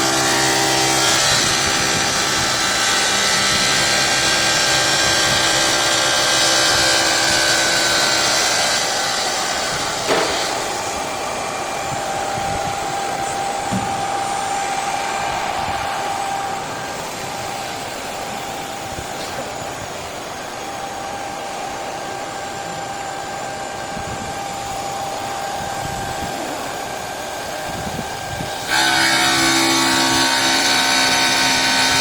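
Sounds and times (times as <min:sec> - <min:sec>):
stone saw machine whirring: 0:00.0 - 0:32.0
knock: 0:10.1 - 0:10.5, 0:13.7 - 0:13.9.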